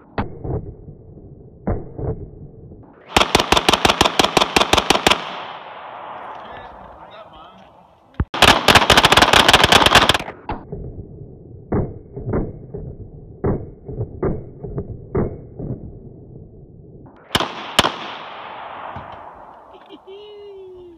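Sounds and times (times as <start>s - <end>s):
rapid gunfire: 3.0s - 7.0s, 8.3s - 10.4s, 17.2s - 19.7s
sharp gunshot: 3.0s - 7.2s, 8.2s - 10.5s, 17.2s - 19.7s.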